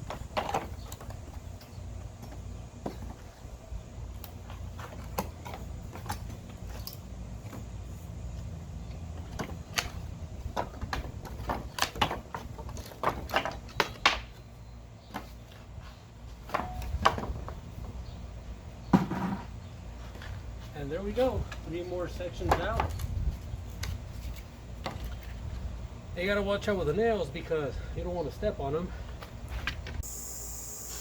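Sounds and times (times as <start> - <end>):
wood and nails cracking: 10.8 - 14.3.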